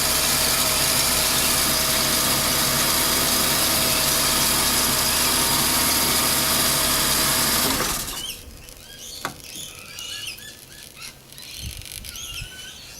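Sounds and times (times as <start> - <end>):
engine idling: 0.0 - 8.6
engine squeaky chirps: 7.7 - 12.9.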